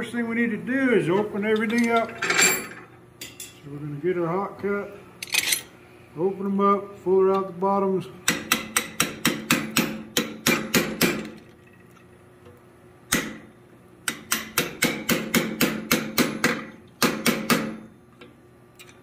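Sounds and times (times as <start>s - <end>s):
hammer striking chisel on steel: 8.3s - 11.2s, 14.1s - 17.8s.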